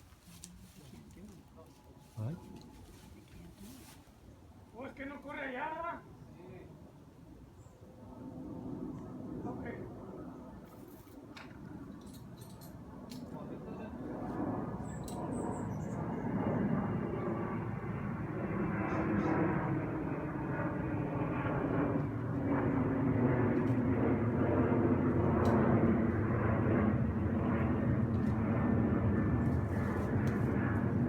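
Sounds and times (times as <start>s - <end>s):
engine droning hum: 0.0s - 3.6s.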